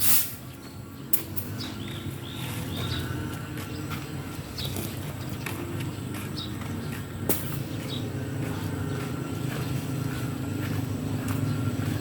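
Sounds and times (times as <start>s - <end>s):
engine running low: 0.0s - 12.0s.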